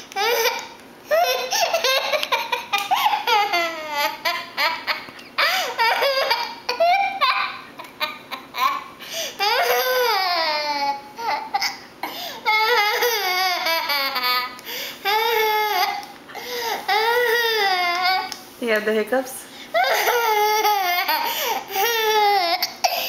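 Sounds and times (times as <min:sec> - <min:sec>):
child laughing and squealing: 0:01.1 - 0:11.9.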